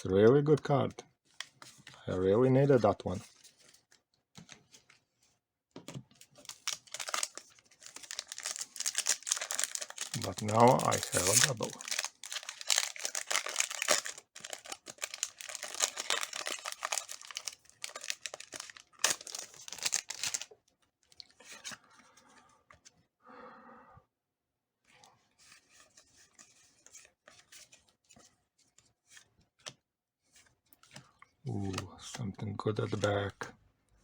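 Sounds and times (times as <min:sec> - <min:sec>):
cards rustling and clicking: 0:05.8 - 0:20.5, 0:25.4 - 0:33.5
foil wrapper tearing and crinkling: 0:06.4 - 0:20.5.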